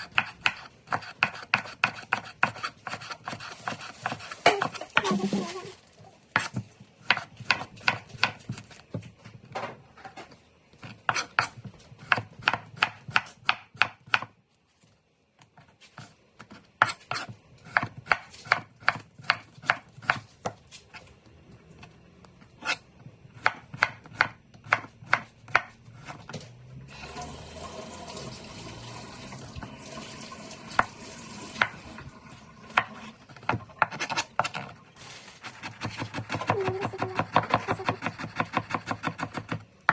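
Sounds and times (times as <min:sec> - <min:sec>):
knife chopping on cutting board: 0:00.0 - 0:05.1, 0:06.4 - 0:09.6, 0:10.8 - 0:14.4, 0:15.5 - 0:20.8, 0:22.4 - 0:26.6, 0:32.7 - 0:34.8, 0:35.4 - 0:39.9.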